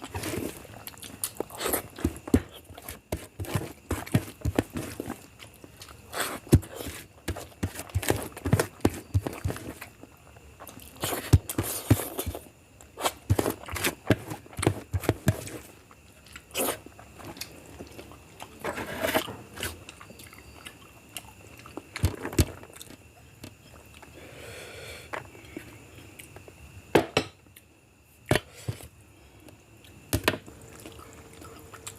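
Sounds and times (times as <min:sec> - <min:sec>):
person chewing food: 0:00.0 - 0:18.6, 0:19.6 - 0:24.2, 0:30.6 - 0:31.9.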